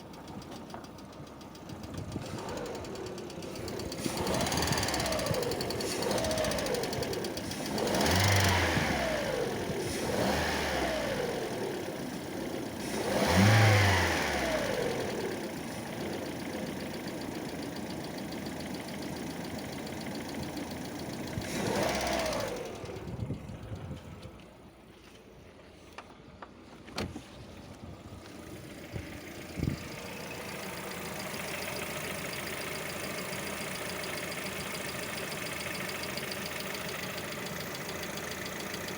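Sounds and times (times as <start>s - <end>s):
car engine revving: 2.2s - 11.9s, 12.7s - 15.4s, 21.4s - 23.1s.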